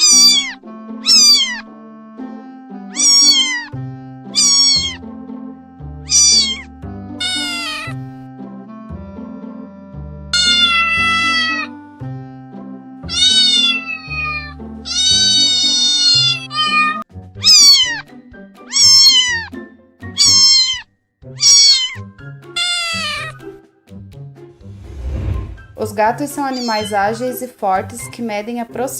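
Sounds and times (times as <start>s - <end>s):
cat meowing: 0.0s - 1.7s, 2.9s - 3.8s, 4.4s - 5.0s, 6.1s - 8.0s, 10.4s - 11.8s, 13.1s - 23.3s, 26.4s - 27.1s
background music: 0.0s - 28.9s.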